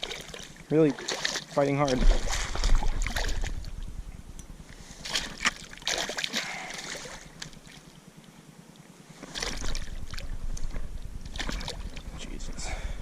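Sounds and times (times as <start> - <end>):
fish thrashing water splashes: 0.0 - 3.7, 5.0 - 7.8, 9.2 - 12.1.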